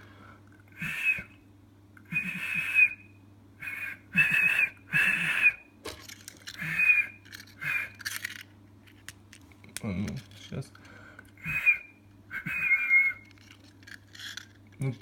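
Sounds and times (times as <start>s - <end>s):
person whistling short blasts: 0.8s - 1.3s, 2.1s - 3.0s, 3.6s - 5.6s, 6.6s - 7.9s, 11.4s - 13.2s.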